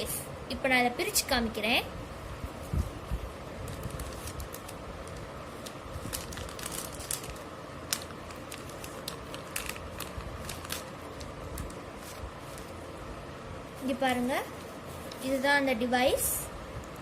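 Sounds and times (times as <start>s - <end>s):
package crinkling and clicking: 3.7s - 12.7s.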